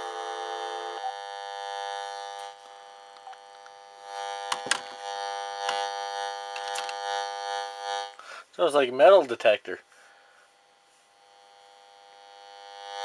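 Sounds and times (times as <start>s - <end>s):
speaker interference buzz: 0.0s - 13.0s
sharp clicks: 4.4s - 4.9s, 6.5s - 7.0s.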